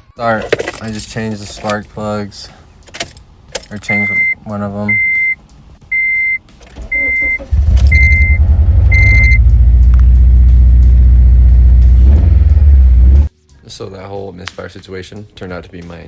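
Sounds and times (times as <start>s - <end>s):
car warning chime beeping: 3.8s - 9.5s
car engine cranking and idling: 6.4s - 13.3s.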